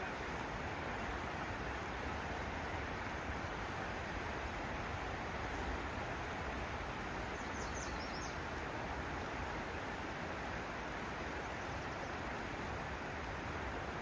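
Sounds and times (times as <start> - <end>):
outdoor background noise: 0.0 - 14.0.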